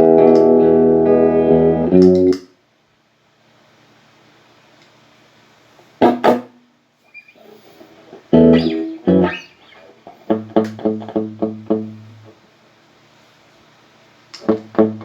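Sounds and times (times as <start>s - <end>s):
guitar strums and notes: 7.1s - 12.3s.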